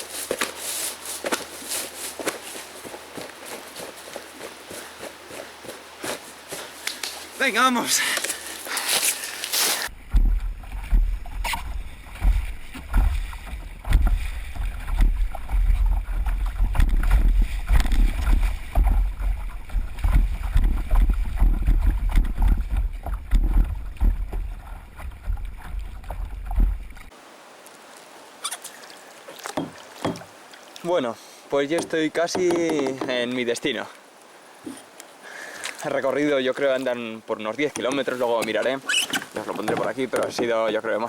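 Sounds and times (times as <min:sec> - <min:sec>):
water splashing against kayak: 0:08.1 - 0:27.2, 0:28.5 - 0:31.0.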